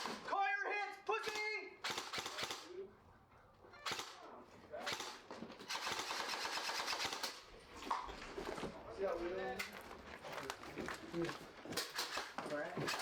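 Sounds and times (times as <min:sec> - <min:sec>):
airsoft full-auto burst: 0:00.0 - 0:00.3, 0:01.2 - 0:02.7, 0:03.8 - 0:04.2, 0:04.8 - 0:07.4
airsoft gun single shots: 0:00.0 - 0:00.3.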